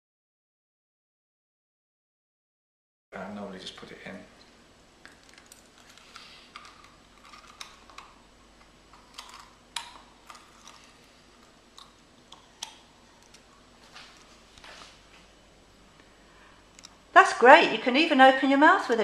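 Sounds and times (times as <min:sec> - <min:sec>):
dental appliance clicks: 0:09.0 - 0:10.8.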